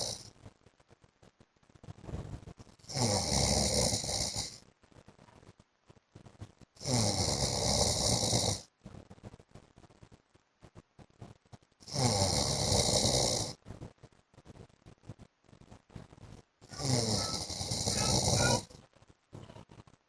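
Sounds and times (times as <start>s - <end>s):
man snoring loudly: 0.0s - 0.2s, 2.9s - 4.6s, 6.8s - 8.6s, 11.9s - 13.6s, 16.7s - 18.7s
quiet breathing: 16.7s - 18.8s.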